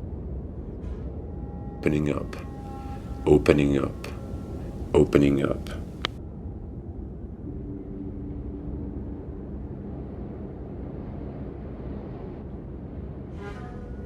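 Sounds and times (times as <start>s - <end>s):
faint held low tones: 1.7s - 6.2s
low rumbling background: 1.7s - 13.3s.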